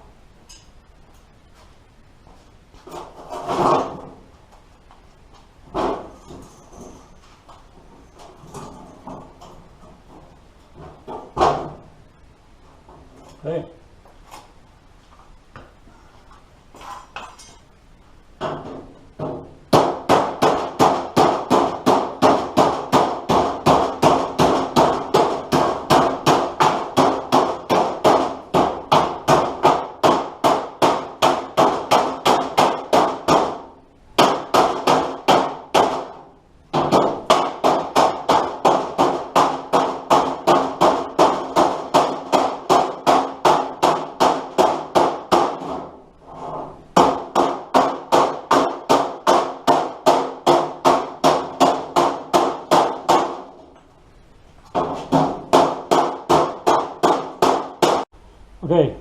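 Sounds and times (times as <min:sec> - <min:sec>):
hammer beating sheet metal: 0:03.3 - 0:04.2, 0:05.7 - 0:06.4, 0:18.4 - 0:53.6, 0:54.7 - 0:58.1.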